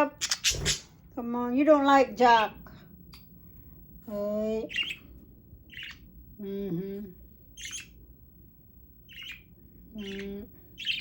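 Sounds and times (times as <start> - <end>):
budgerigars chirping: 4.7 - 5.0, 5.7 - 6.1, 7.6 - 8.0, 9.1 - 11.0.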